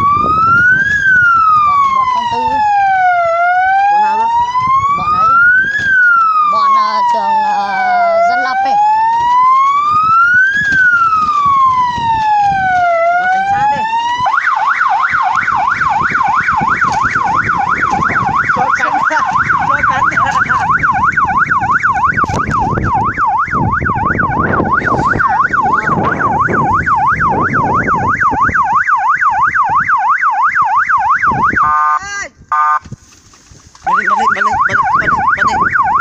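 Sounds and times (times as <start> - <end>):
electronic siren yelping: 0.0 - 32.9, 33.9 - 36.0.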